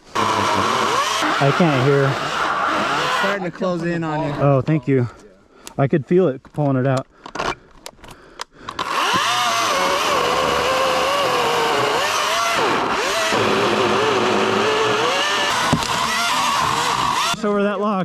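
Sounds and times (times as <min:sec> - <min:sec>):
chainsaw cutting log: 0:00.0 - 0:03.4, 0:08.7 - 0:17.6.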